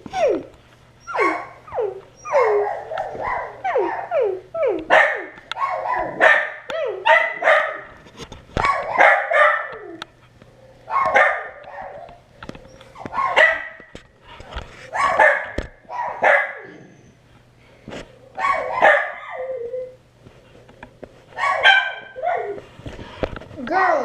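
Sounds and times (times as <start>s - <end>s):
dogs barking: 1.0s - 8.0s, 8.6s - 10.0s, 10.7s - 12.3s, 13.0s - 13.9s, 14.9s - 16.9s, 18.3s - 19.6s, 21.4s - 22.6s.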